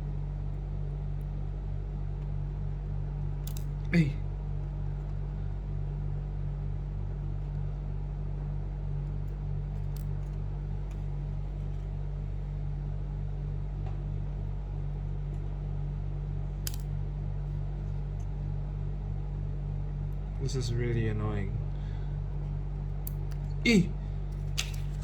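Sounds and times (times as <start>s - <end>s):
pulsing low hum: 0.0s - 25.0s
clicks of small parts handled: 3.4s - 3.7s, 16.6s - 16.9s, 24.3s - 25.0s.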